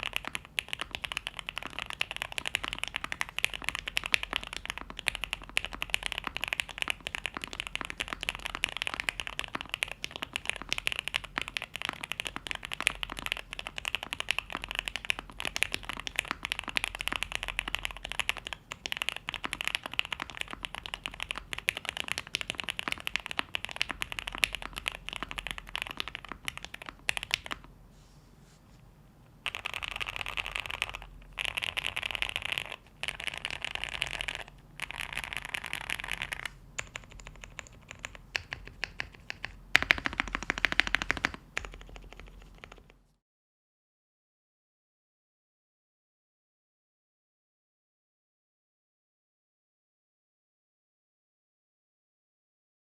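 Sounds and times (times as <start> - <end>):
mechanical keyboard typing: 0.0 - 27.7, 29.4 - 43.0.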